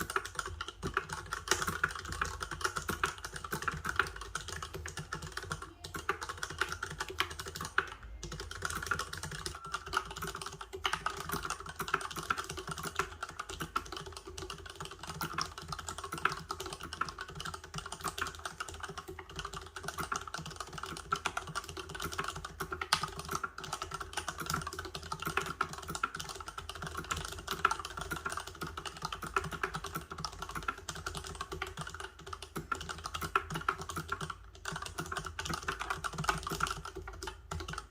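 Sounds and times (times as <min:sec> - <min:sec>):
fast typing on mechanical keyboard: 0:00.0 - 0:37.9.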